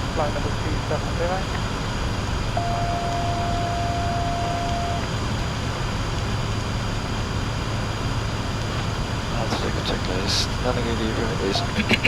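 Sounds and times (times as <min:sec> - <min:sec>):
faint high whine: 0:00.0 - 0:08.3, 0:09.0 - 0:12.0
airflow and jet engine noise: 0:00.0 - 0:12.0
steady tone: 0:02.5 - 0:05.2.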